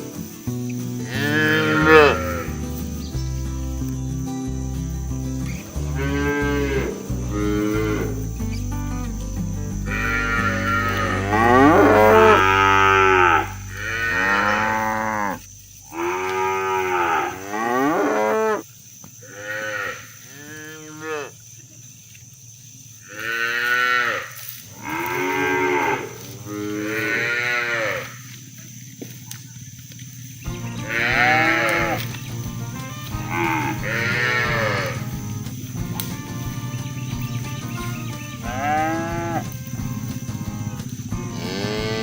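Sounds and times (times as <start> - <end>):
cattle mooing: 1.0 - 2.6, 5.6 - 8.4, 9.8 - 18.6, 23.1 - 28.2, 30.6 - 35.3, 36.0 - 42.0.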